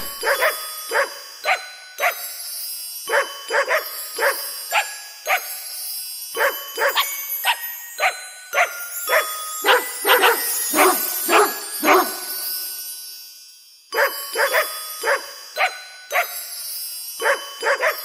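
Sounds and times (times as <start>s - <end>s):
dog barking: 0.0s - 2.2s, 3.1s - 5.5s, 6.4s - 12.3s, 14.0s - 16.3s, 17.2s - 18.0s.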